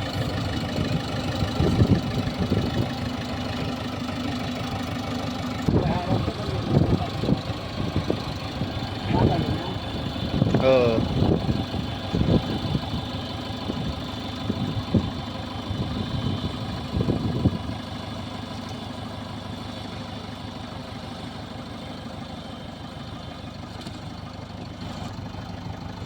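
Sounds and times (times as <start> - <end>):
diesel engine idling: 0.0 - 26.0.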